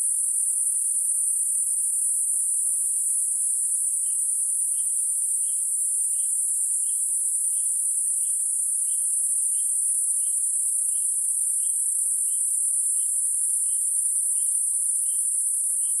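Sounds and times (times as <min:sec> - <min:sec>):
high-pitched insect drone: 0:00.0 - 0:16.0.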